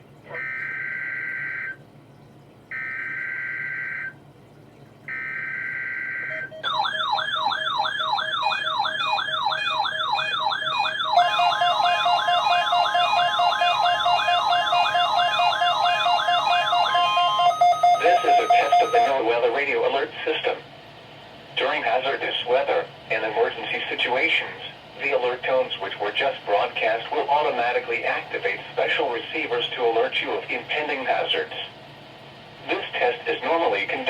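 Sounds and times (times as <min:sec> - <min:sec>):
warbling siren-like alert tone: 0:05.1 - 0:19.2
steady tone: 0:10.2 - 0:19.2.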